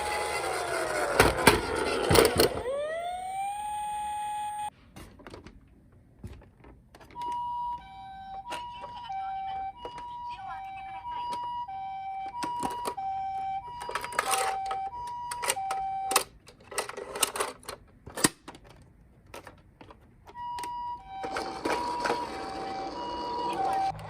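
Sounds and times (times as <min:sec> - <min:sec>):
toy two-tone siren: 0:00.0 - 0:04.7, 0:07.2 - 0:16.3, 0:20.3 - 0:24.0
plastic toy cars clattering: 0:00.2 - 0:02.6, 0:13.7 - 0:20.1, 0:21.1 - 0:24.0.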